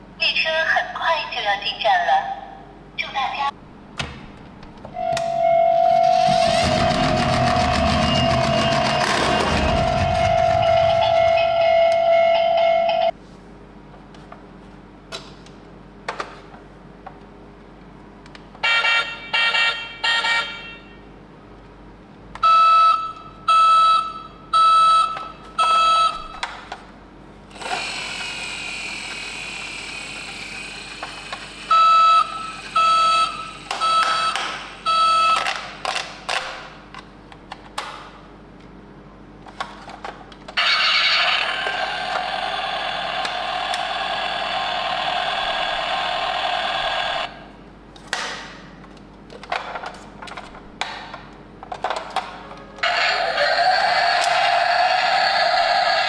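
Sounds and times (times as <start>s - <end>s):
toy siren beeping: 31.7s - 35.5s, 40.6s - 47.3s
toy motor whirring and clicking: 40.6s - 47.3s, 52.8s - 56.0s.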